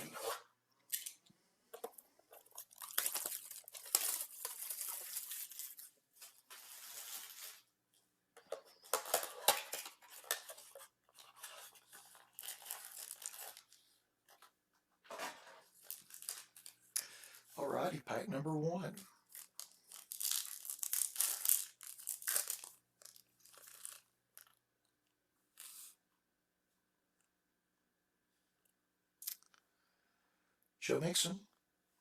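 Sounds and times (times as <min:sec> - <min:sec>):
packaging tearing and crinkling: 0:02.4 - 0:05.9, 0:08.9 - 0:13.8, 0:15.8 - 0:16.8, 0:19.3 - 0:24.0.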